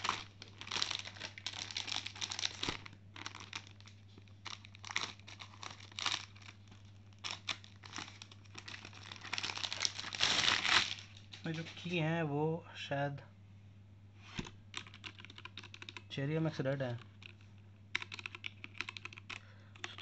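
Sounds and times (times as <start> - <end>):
packaging crinkling: 0.0 - 11.9.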